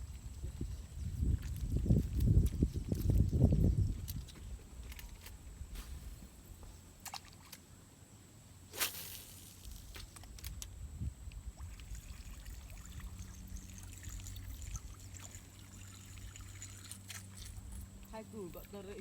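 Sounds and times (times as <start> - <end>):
sharp splash: 8.8 - 10.0
water trickling: 11.4 - 18.8.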